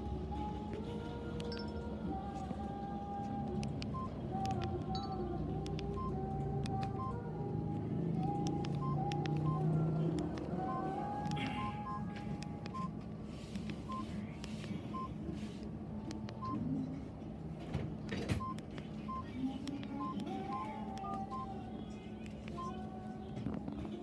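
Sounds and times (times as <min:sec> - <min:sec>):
steady low hum: 0:00.0 - 0:24.0
phone keypad beeps: 0:01.4 - 0:01.8, 0:03.5 - 0:07.2, 0:08.2 - 0:12.9, 0:13.8 - 0:14.1, 0:14.9 - 0:15.2, 0:16.2 - 0:16.6, 0:18.4 - 0:21.6, 0:22.3 - 0:22.8.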